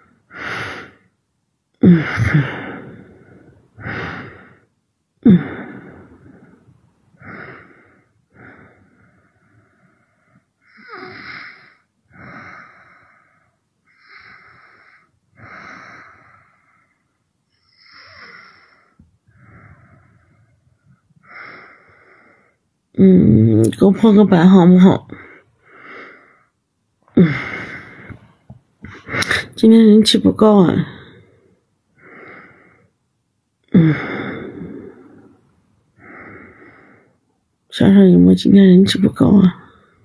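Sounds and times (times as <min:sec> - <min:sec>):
woman breathing in hissy breaths: 0:05.4 - 0:22.7, 0:33.7 - 0:37.2.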